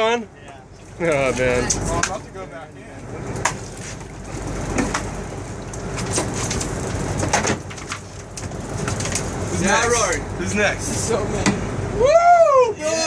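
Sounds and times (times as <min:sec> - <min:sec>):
boat engine rumbling: 0:00.0 - 0:13.0
sharp knocks and clicks: 0:05.9 - 0:09.3.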